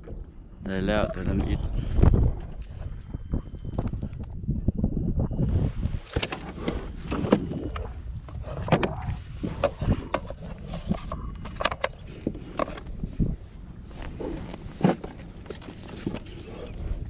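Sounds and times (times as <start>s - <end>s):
knocks and clatters on kayak: 6.0s - 13.3s, 14.5s - 16.8s.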